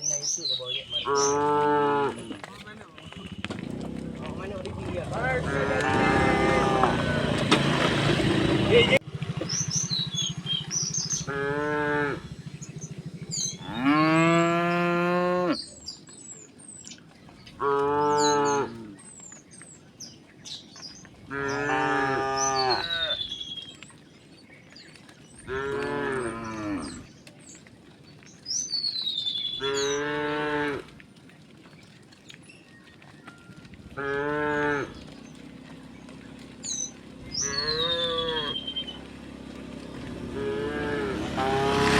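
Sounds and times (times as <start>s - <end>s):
small birds chirping: 0.0s - 41.9s
cows mooing: 0.9s - 8.9s, 10.4s - 15.6s, 17.5s - 19.0s, 21.2s - 23.3s, 25.4s - 27.1s, 29.6s - 31.0s, 33.4s - 41.9s.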